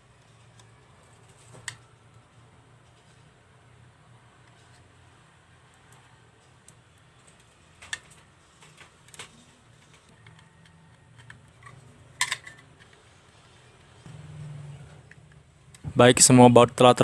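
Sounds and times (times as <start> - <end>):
faint low hum: 0.0 - 17.0.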